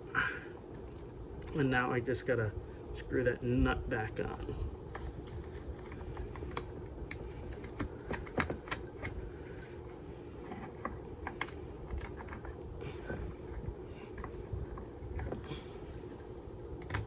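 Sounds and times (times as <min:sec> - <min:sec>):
steady low hum: 0:00.0 - 0:17.0
metal parts clicking: 0:04.9 - 0:12.6.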